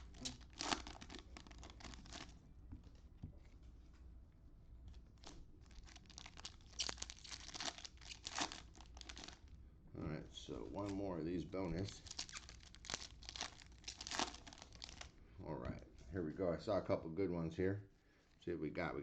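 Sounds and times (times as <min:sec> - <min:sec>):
plastic wrappers crinkling and tearing: 0:00.0 - 0:02.4, 0:05.2 - 0:09.5, 0:10.6 - 0:15.2.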